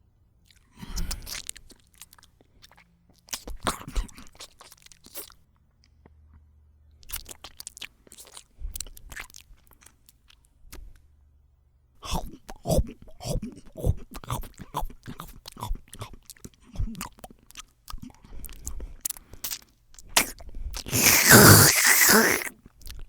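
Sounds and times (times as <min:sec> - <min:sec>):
wet sloppy eating: 0:20.2 - 0:22.5
loud wet squelch: 0:20.9 - 0:22.5.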